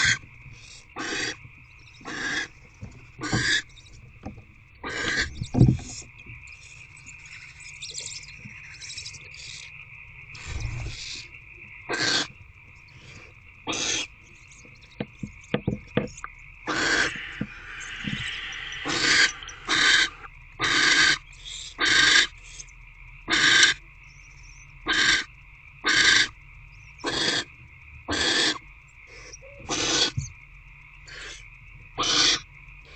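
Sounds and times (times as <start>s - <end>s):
owlets hissing screeches: 13.7s - 14.1s, 16.6s - 22.3s, 29.2s - 30.2s.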